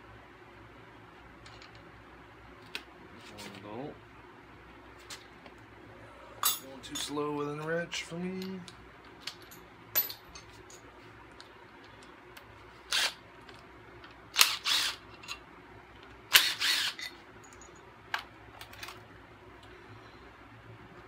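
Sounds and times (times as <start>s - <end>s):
power tool bursts: 14.4s - 15.0s, 16.3s - 17.1s.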